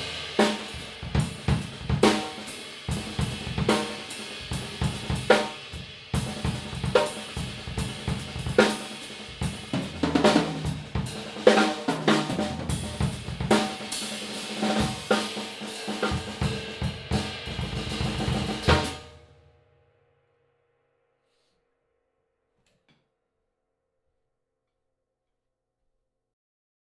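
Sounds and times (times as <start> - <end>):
bass drum: 0.0 - 13.9, 16.0 - 19.0
snare drum: 0.0 - 19.2
cymbals: 0.0 - 19.6.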